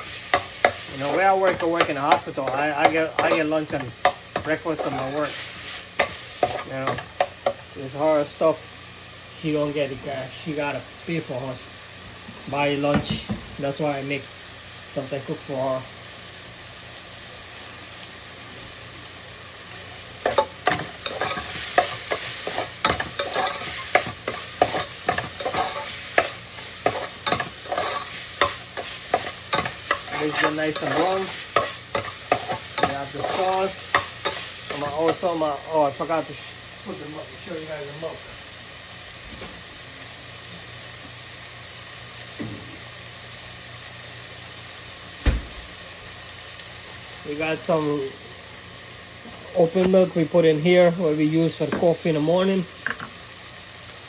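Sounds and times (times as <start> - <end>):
utensil scraping a pan: 0.0 - 7.0, 20.2 - 35.2
meat sizzling in a frying pan: 0.0 - 54.0
louder thump: 45.2 - 45.8.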